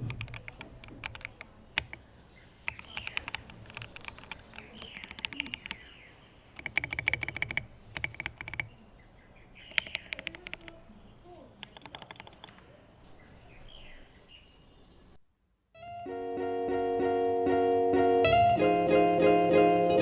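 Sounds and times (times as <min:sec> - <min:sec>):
mechanical keyboard key clacks: 0:00.0 - 0:02.0, 0:02.7 - 0:05.8, 0:06.6 - 0:08.7, 0:09.7 - 0:10.8, 0:11.6 - 0:12.6.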